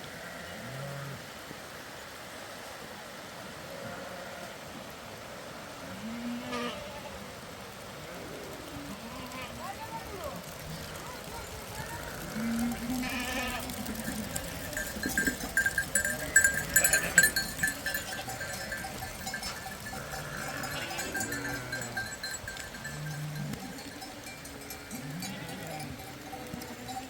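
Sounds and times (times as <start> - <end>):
sheep bleating: 0.1 - 1.2, 3.7 - 4.6, 5.9 - 7.2, 8.8 - 27.0
livestock bells clinking: 9.6 - 27.0.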